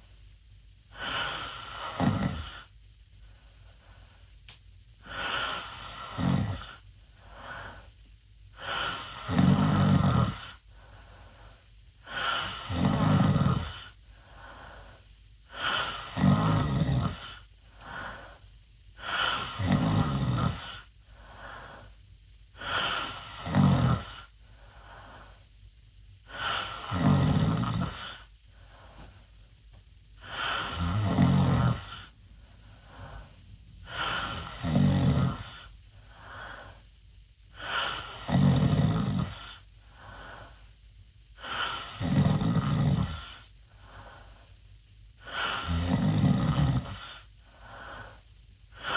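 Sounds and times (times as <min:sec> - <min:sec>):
quiet breaths: 0:00.0 - 0:48.9
boy snoring loudly: 0:00.9 - 0:02.7, 0:05.0 - 0:06.8, 0:08.6 - 0:10.6, 0:12.0 - 0:14.0, 0:15.5 - 0:18.3, 0:19.0 - 0:21.8, 0:22.6 - 0:24.3, 0:26.3 - 0:28.3, 0:30.2 - 0:32.1, 0:33.8 - 0:35.7, 0:37.5 - 0:40.5, 0:41.4 - 0:43.4, 0:45.2 - 0:48.9.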